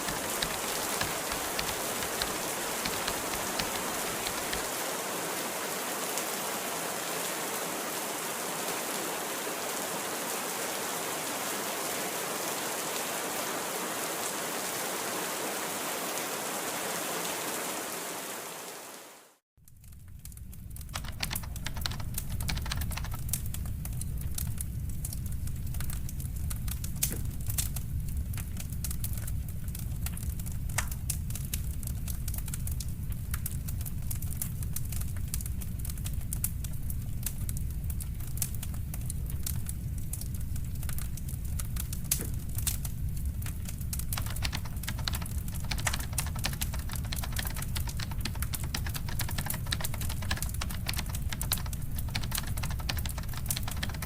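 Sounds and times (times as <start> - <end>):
fire crackling and popping: 0.0 - 4.7, 19.7 - 54.0
low rumble of fire: 19.7 - 22.4, 23.2 - 44.2.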